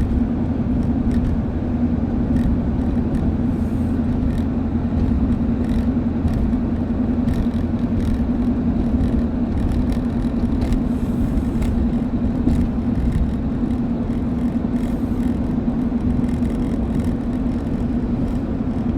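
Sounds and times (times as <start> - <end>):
car droning hum: 0.0 - 18.9
low road rumble: 0.0 - 18.9.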